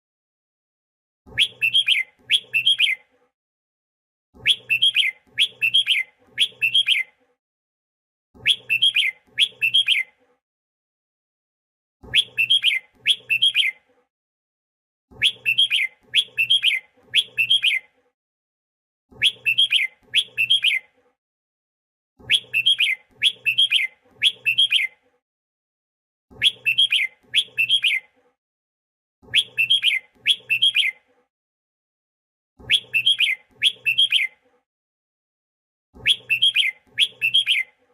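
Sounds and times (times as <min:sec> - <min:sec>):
bird singing whistled phrases: 0:01.3 - 0:03.0, 0:04.4 - 0:07.1, 0:08.4 - 0:10.1, 0:12.1 - 0:13.8, 0:15.2 - 0:17.9, 0:19.2 - 0:20.9, 0:22.2 - 0:25.0, 0:26.4 - 0:28.1, 0:29.3 - 0:31.0, 0:32.6 - 0:34.4, 0:36.0 - 0:37.8.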